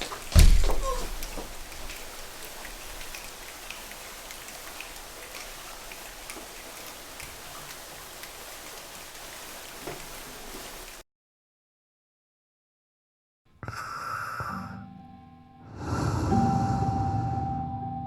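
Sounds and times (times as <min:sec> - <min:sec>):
rain-like patter of drops: 0:00.0 - 0:11.0.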